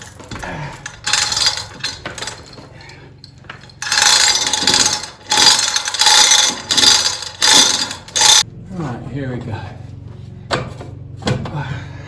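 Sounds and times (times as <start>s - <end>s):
hand hoist ratcheting clatter: 0.0s - 8.4s.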